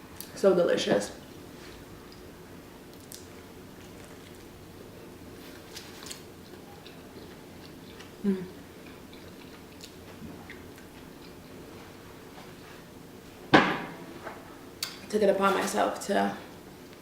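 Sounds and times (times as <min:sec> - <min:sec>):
person chewing food: 0:02.9 - 0:04.6, 0:05.3 - 0:12.9.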